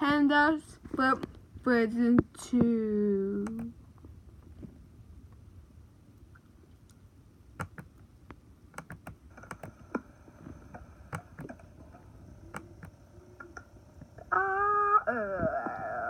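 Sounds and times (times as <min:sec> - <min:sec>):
faint clicks and taps: 0:02.0 - 0:05.4, 0:07.6 - 0:11.7.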